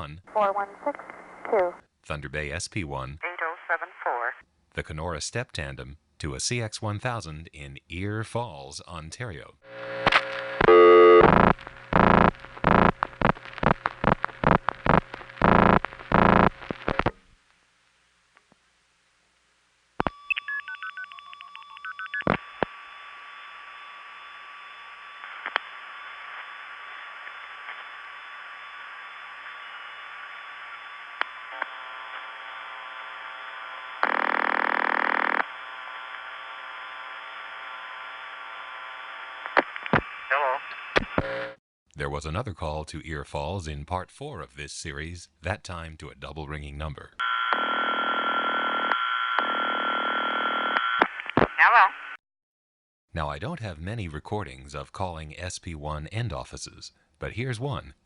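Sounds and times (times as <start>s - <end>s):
telephone line hiss: 9.7s - 17.1s
telephone line hum: 9.7s - 17.1s, 20.0s - 39.8s, 40.4s - 41.6s, 47.2s - 51.8s
telephone signalling tones: 9.8s - 12.9s, 20.0s - 23.5s.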